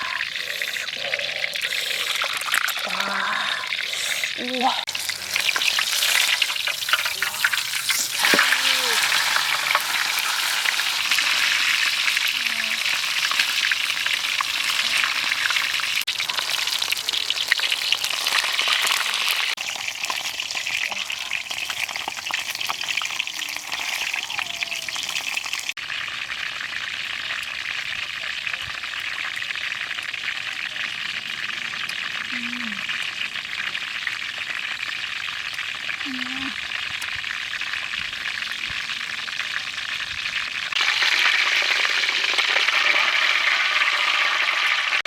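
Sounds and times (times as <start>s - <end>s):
oil crackling pops: 0.0s - 25.7s
chicken sizzling in hot oil: 0.0s - 45.0s.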